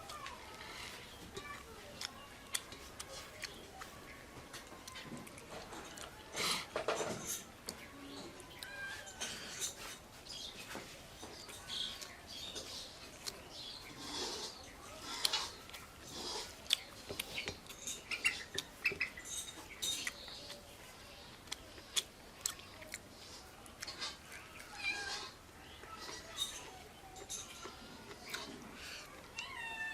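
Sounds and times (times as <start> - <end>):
person chewing and lip smacking: 1.4 - 4.0, 11.6 - 20.7, 21.3 - 24.7, 27.3 - 29.4.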